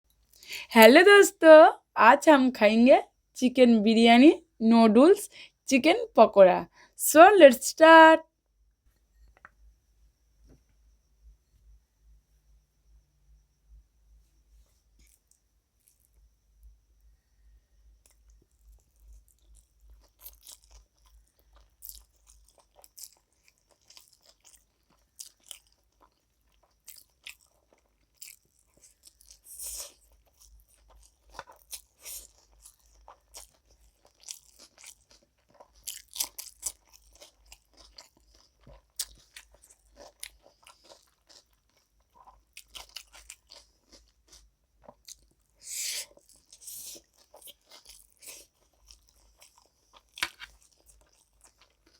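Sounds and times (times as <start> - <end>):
crunching and chewing food: 14.3 - 51.9.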